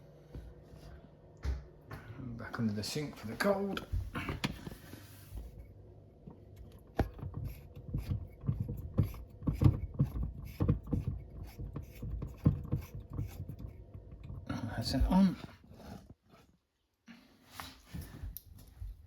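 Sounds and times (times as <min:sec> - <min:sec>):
knocks clicks and rubbing: 0:06.6 - 0:14.5.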